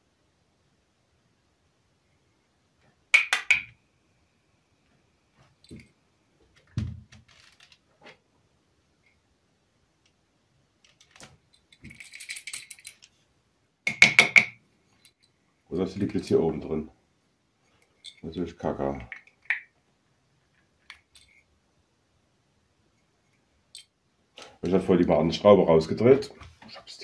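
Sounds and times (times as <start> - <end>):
metallic clinking and rattling: 10.9 - 13.2.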